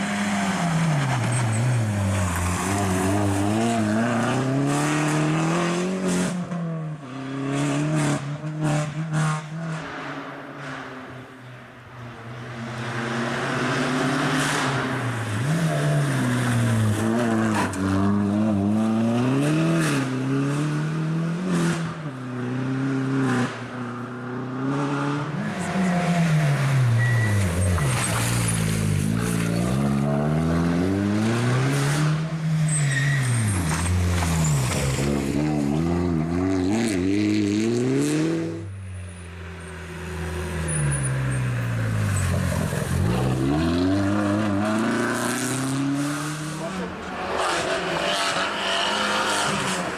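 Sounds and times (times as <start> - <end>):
rally car engine accelerating: 39.7 - 49.9.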